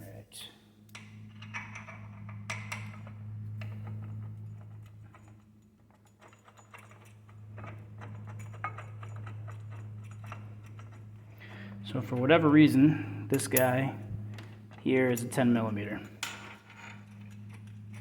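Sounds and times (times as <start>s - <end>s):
low hum: 0.0s - 18.0s
metal bolts and washers clinking: 0.9s - 18.0s.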